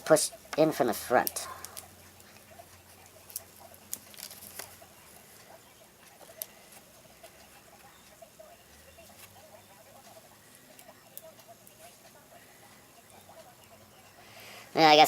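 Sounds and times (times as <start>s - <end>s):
small parts clicking and ticking: 1.2s - 2.5s, 3.3s - 8.9s.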